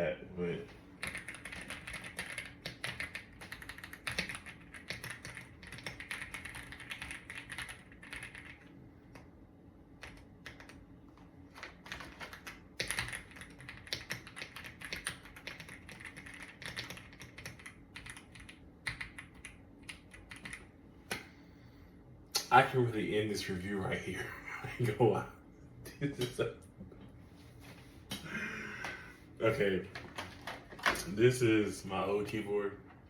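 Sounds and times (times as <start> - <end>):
mechanical keyboard typing: 1.0 - 9.2, 10.0 - 10.8, 11.5 - 20.7.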